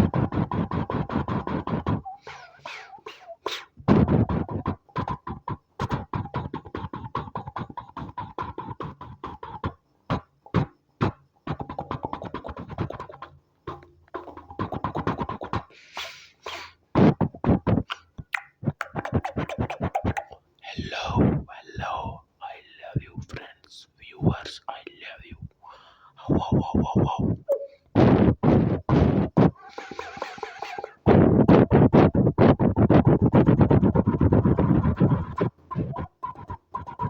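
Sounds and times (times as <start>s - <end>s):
beatbox vocal percussion: 0.0s - 37.0s
held tone: 27.2s - 27.8s.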